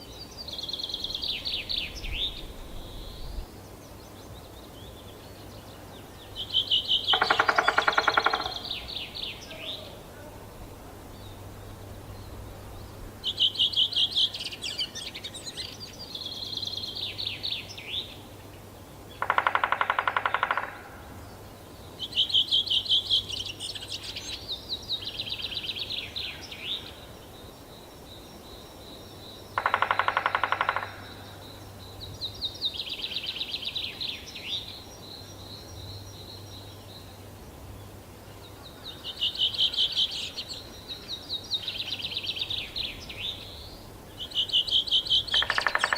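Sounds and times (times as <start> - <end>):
songbirds singing trilled phrases: 0.0 - 45.9
woodpecker drumming on a tree: 6.6 - 9.3, 19.1 - 21.1, 29.5 - 31.6, 44.4 - 45.9.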